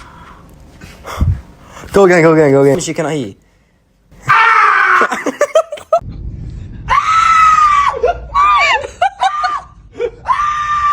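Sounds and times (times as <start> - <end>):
person screaming: 4.2 - 5.3.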